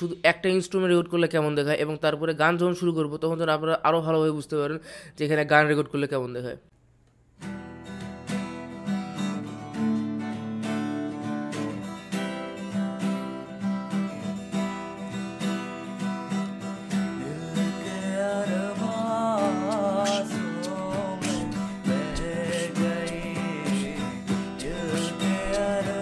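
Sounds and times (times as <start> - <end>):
acoustic guitar strumming chords: 7.4 - 26.0
person singing: 17.1 - 26.0.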